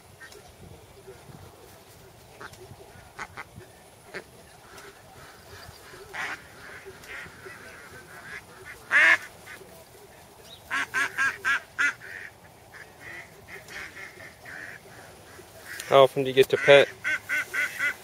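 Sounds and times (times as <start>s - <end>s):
blue jay calling: 4.1s - 9.4s, 10.5s - 18.0s.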